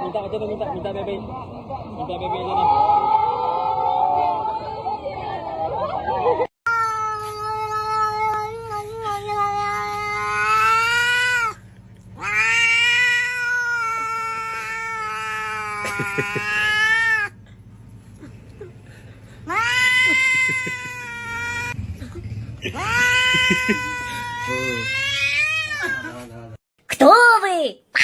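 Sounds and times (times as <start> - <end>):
cat yowling: 6.7 - 11.6, 12.2 - 17.4, 19.4 - 21.8, 22.6 - 26.2.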